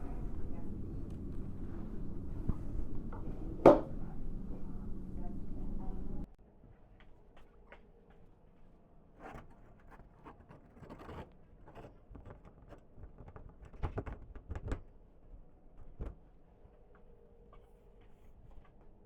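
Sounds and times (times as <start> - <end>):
low steady hum: 0.0 - 11.2.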